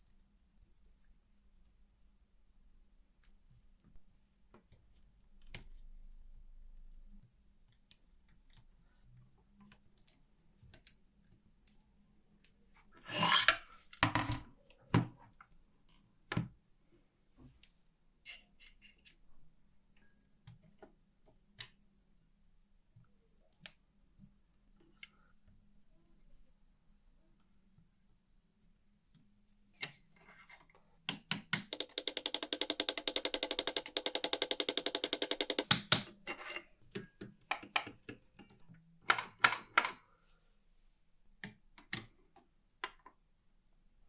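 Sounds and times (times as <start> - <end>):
sharp knocks: 31.8 - 35.8
metal parts and tools clicking: 31.8 - 36.0.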